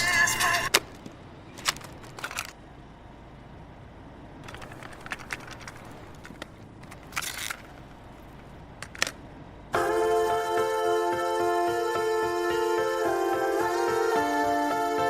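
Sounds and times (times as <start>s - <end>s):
short clicks and crackles: 4.4s - 7.8s.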